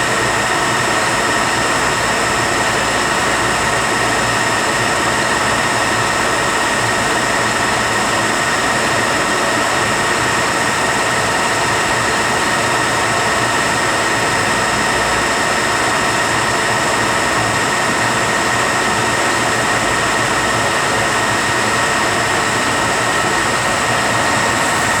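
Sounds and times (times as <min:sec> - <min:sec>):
high gear whine: 0:19.0 - 0:25.0
machine drone: 0:19.5 - 0:25.0.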